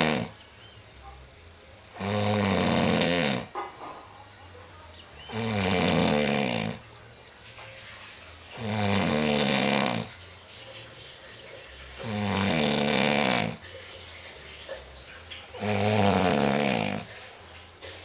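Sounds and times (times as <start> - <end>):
man snoring: 0.0 - 0.4, 2.0 - 3.5, 5.3 - 6.8, 8.6 - 10.1, 12.0 - 13.6, 15.6 - 17.1.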